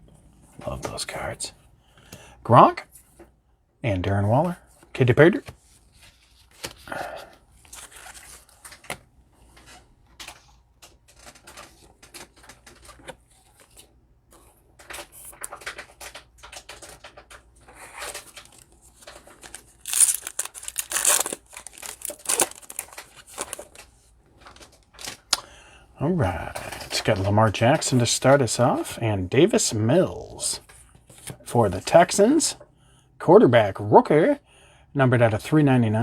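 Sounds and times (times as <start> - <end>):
cards being handled: 7.6 - 24.7
foil wrapper crinkling and tearing: 17.8 - 23.8.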